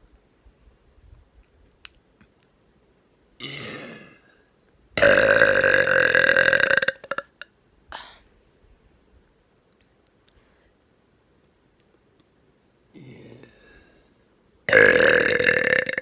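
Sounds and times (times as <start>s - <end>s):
long loud burp: 3.4s - 4.3s, 5.0s - 7.4s, 13.0s - 13.6s, 14.7s - 16.0s.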